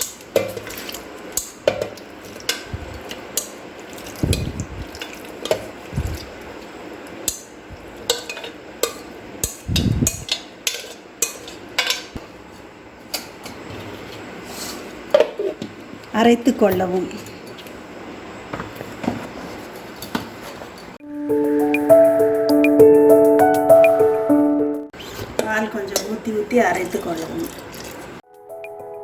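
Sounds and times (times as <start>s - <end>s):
utensils clinking against a bowl: 7.2s - 12.2s.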